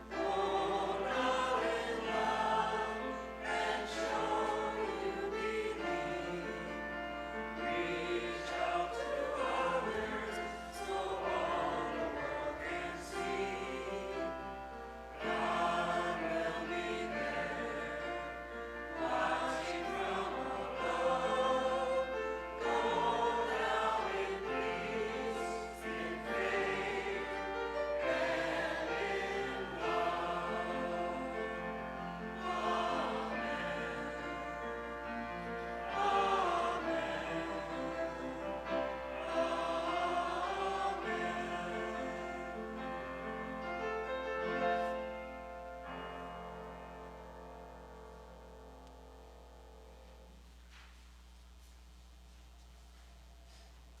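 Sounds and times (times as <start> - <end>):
choir singing church music: 0.0 - 50.3.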